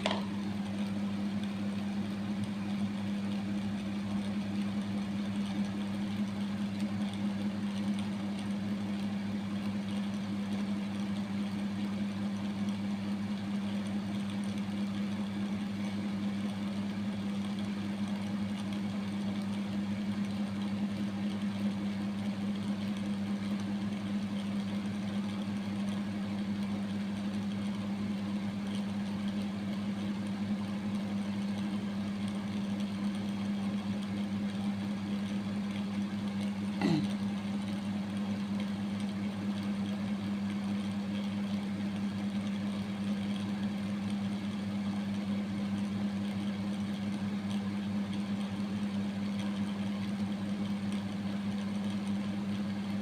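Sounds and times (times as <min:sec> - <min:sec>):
low mechanical hum: 0:00.0 - 0:53.0.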